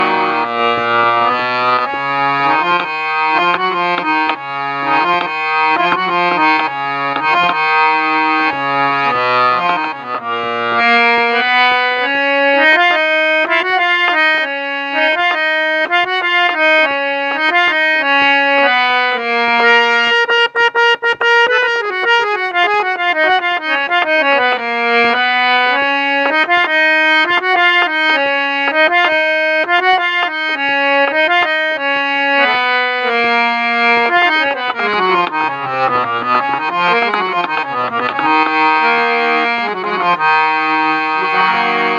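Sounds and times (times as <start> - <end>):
bass line: 0.0 - 5.2, 34.8 - 41.9
instrumental ringtone melody: 40.8 - 41.9.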